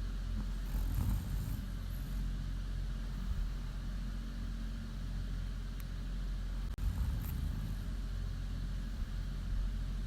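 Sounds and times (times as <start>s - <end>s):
woman snoring: 0.5s - 2.0s, 6.8s - 8.0s.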